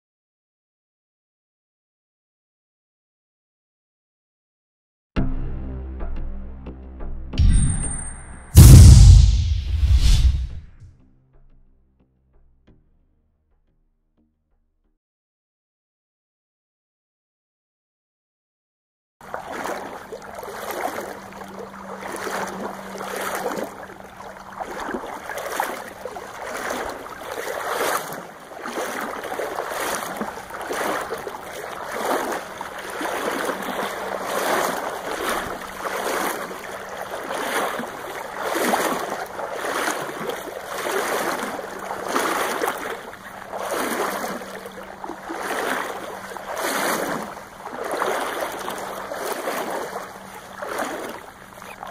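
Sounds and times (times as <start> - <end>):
water lapping against boat: 19.2 - 51.9.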